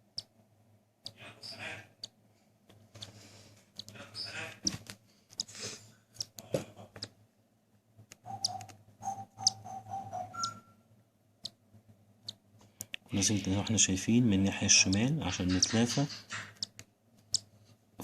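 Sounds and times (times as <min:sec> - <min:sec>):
bird chick begging calls: 0:08.2 - 0:10.7.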